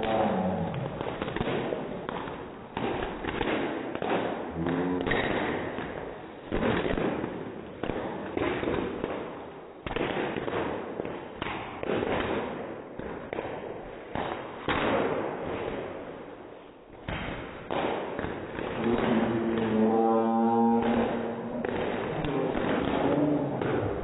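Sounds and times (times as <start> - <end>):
bubble wrap popping under feet: 17.3 - 24.0.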